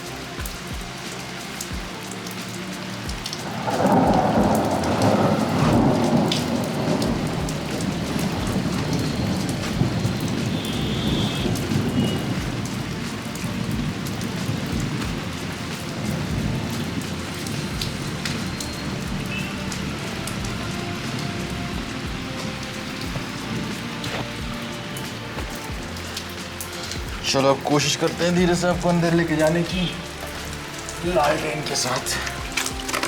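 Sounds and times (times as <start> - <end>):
steady rain: 0.0 - 33.0
thunder rumbling: 3.1 - 26.2.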